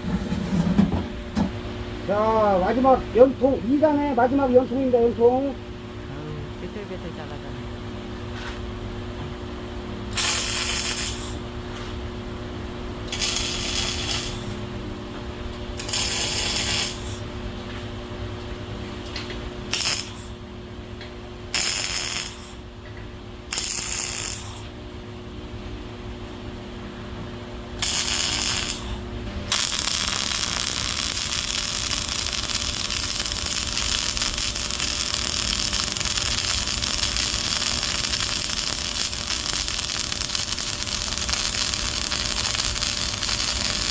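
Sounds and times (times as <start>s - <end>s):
power tool bursts: 10.2s - 11.4s, 27.8s - 43.9s.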